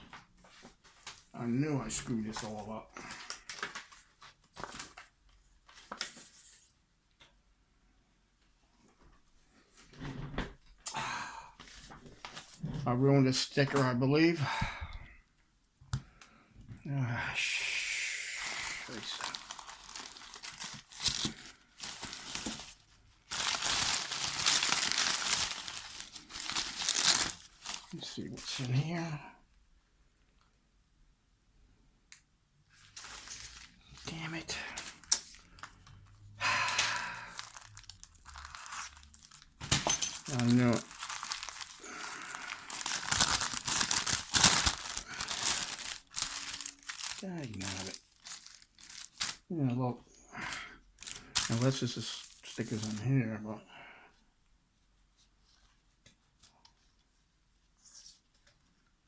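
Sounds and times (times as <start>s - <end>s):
packaging crinkling and tearing: 2.2s - 5.1s, 18.4s - 28.7s, 32.9s - 36.0s, 36.7s - 49.5s, 51.0s - 53.0s.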